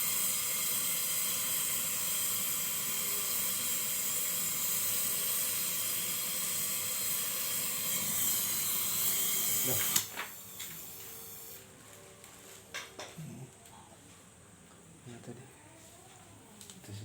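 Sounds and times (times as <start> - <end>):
high hiss of gas: 0.0 - 11.6.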